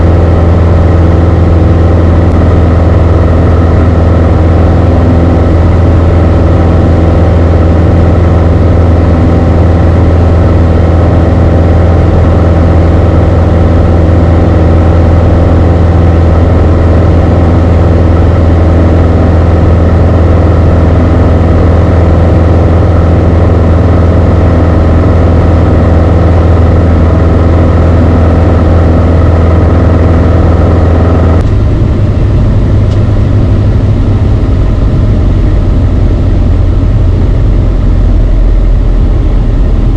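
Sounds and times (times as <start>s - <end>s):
aircraft engine and propeller droning: 0.0s - 39.9s.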